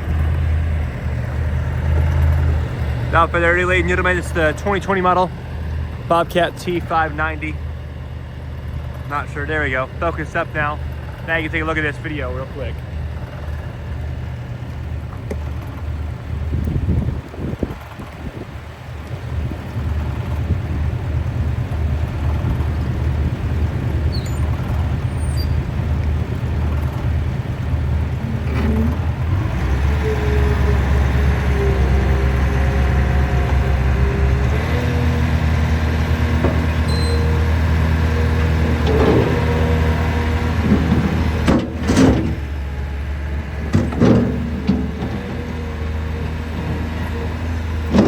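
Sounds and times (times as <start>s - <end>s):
steady whine: 0.0s - 16.3s
diesel loader engine running: 0.0s - 48.0s.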